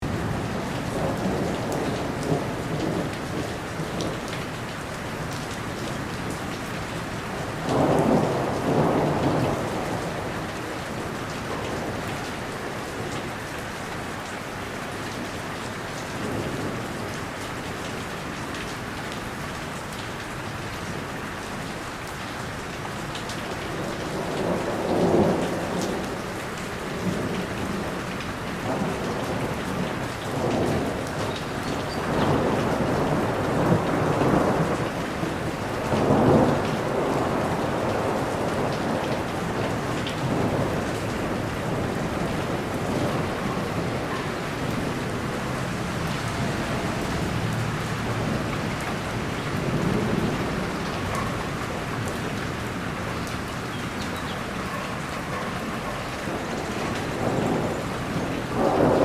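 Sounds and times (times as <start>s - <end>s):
heavy rain: 0.0s - 59.0s
thunder rumbling: 7.5s - 13.1s, 27.0s - 59.0s.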